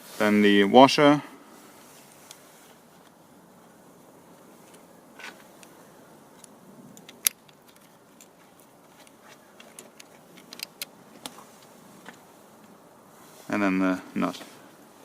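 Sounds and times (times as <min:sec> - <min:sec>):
metal hardware clicking: 0:06.4 - 0:11.0.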